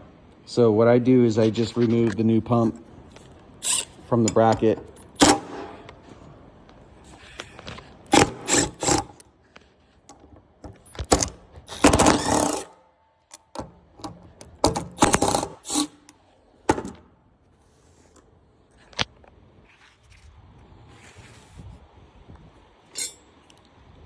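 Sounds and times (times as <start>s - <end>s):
tool scraping on parts: 1.4s - 6.4s, 7.0s - 17.0s, 22.9s - 23.3s
hand tools clicking and knocking: 3.6s - 6.0s, 7.1s - 9.3s, 10.0s - 12.7s, 13.3s - 17.0s.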